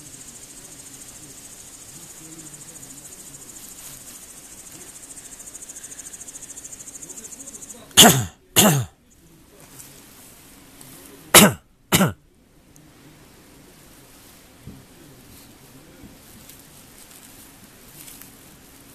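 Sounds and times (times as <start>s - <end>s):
insect chirring: 0.0s - 8.0s
person coughing: 8.0s - 8.9s, 11.3s - 12.2s.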